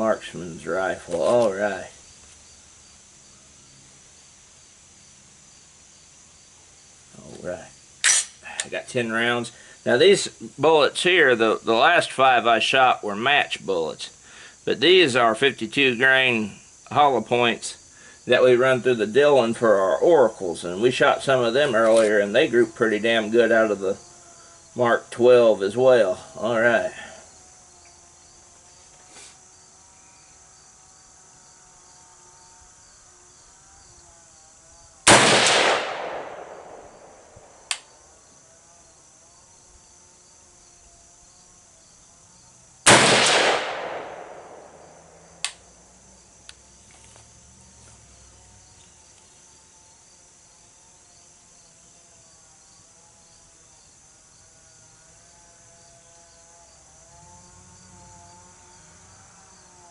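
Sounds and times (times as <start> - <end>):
crickets chirring: 0.0 - 59.9
rifle shots with echo: 35.1 - 37.4, 42.9 - 44.8.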